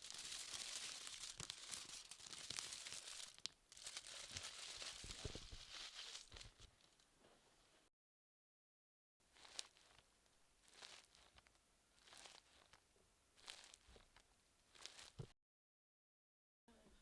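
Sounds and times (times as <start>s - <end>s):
material crinkling and rustling: 0.0s - 7.8s, 9.3s - 12.8s, 13.4s - 15.3s.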